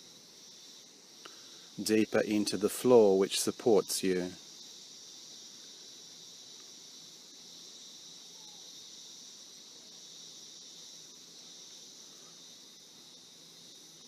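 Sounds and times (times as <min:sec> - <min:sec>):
crickets chirring: 0:00.0 - 0:14.0.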